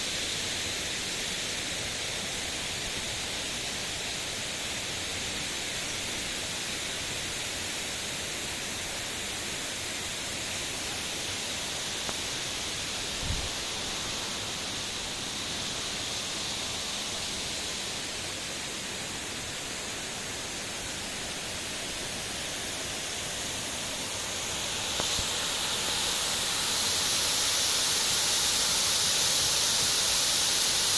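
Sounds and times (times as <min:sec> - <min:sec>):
waterfall rushing: 0:10.1 - 0:30.9.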